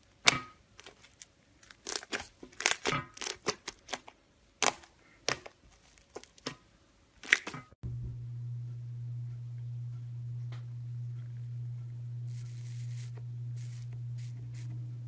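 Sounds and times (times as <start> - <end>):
slime crust crackling: 0.7 - 6.6
steady low hum: 7.8 - 15.0.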